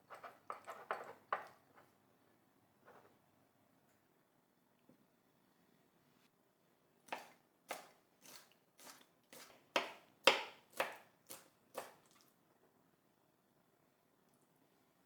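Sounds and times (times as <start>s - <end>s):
knife chopping on cutting board: 9.7s - 12.0s.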